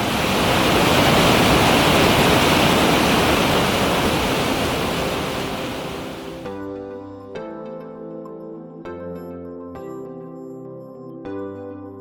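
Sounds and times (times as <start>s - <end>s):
waterfall rushing: 0.0s - 6.5s.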